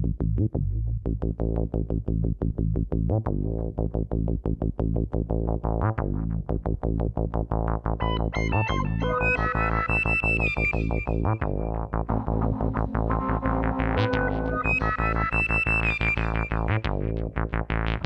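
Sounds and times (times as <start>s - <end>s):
steady synth bass: 0.0s - 18.0s
synthesizer repeated notes: 8.1s - 17.2s.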